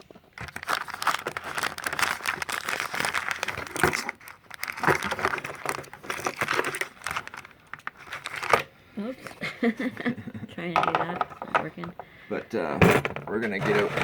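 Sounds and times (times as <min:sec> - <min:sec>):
packaging crinkling and rustling: 0:00.0 - 0:08.7.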